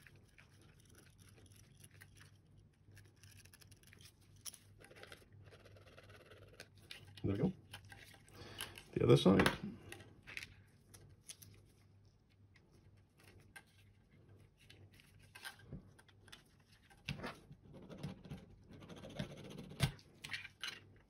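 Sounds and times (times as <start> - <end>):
plastic parts clicking and scratching: 0.0 - 11.6, 13.0 - 21.0.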